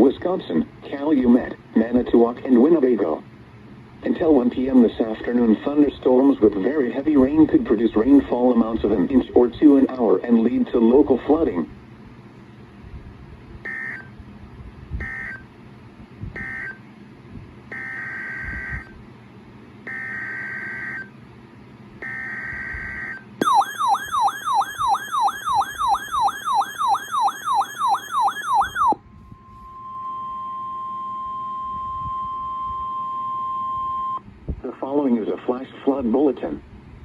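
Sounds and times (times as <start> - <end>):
screechy two-tone digital data bursts: 23.4 - 29.0
warbling siren-like alert tone: 23.4 - 29.8
steady single-pitch alert tone: 23.4 - 31.8.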